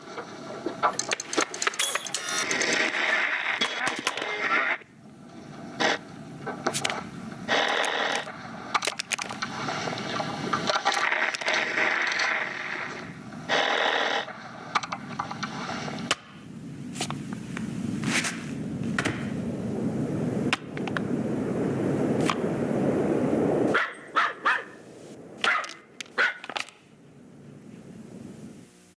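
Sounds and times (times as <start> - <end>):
scraping and rattling: 0.6 - 4.5
sharp clicks and knocks: 0.8 - 3.0, 25.4 - 26.8.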